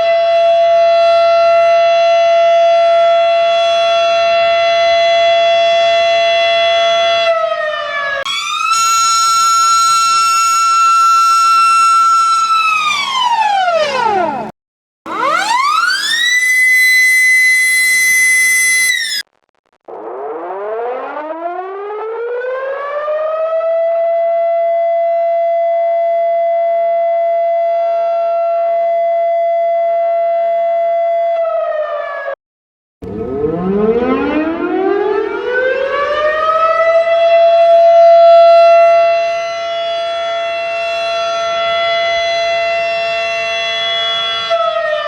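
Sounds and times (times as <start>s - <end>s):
tornado siren winding up: 3.1s - 14.5s, 15.1s - 23.8s, 33.0s - 45.0s.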